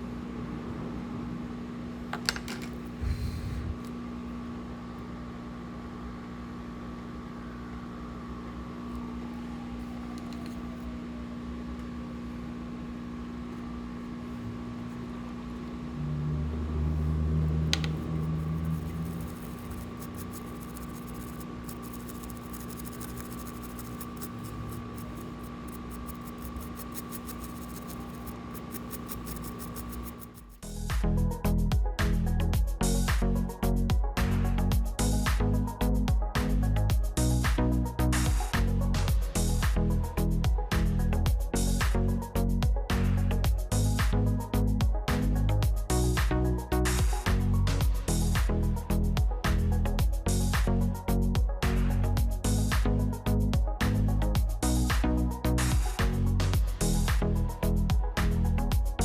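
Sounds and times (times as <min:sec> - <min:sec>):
fan-driven machine humming: 0:00.0 - 0:30.9
faint rapid ticks and scratches: 0:13.4 - 0:15.8, 0:16.9 - 0:30.7
quick clicks: 0:17.7 - 0:30.6.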